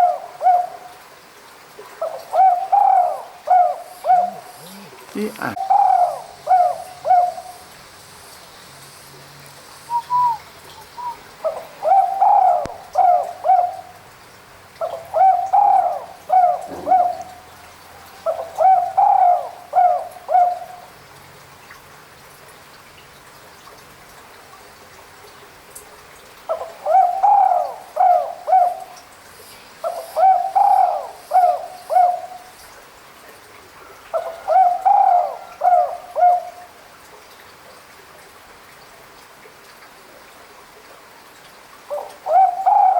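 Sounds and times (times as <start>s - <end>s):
dove cooing: 0.0s - 0.8s, 2.0s - 7.6s, 9.9s - 13.9s, 14.8s - 20.9s, 26.5s - 29.0s, 29.8s - 32.4s, 34.1s - 36.6s, 41.9s - 42.9s.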